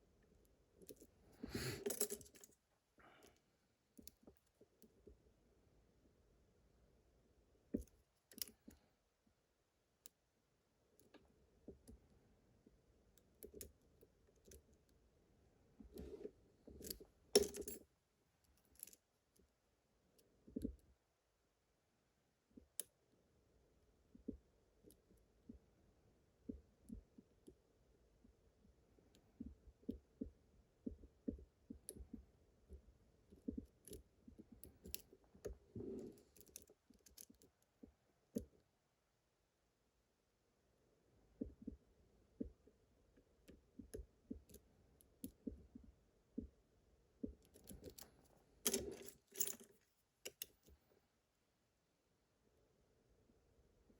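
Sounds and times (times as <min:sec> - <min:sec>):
lock pick clicking in a lock: 0:50.3 - 0:50.6.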